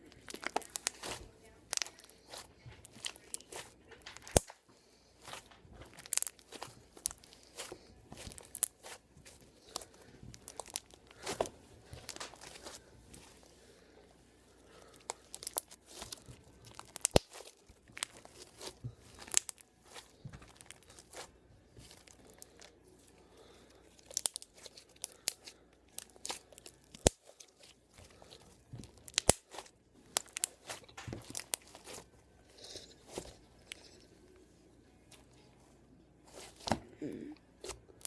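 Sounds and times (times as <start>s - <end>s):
slime clicks and crackling pops: 5.9s - 9.0s, 15.2s - 19.6s, 26.0s - 27.3s, 28.8s - 32.0s.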